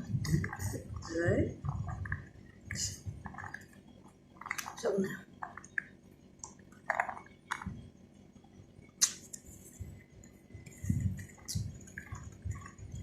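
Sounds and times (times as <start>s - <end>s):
wet chewing and squishing: 0.2s - 7.8s, 10.6s - 13.0s
sharp mouth click: 9.0s - 9.3s.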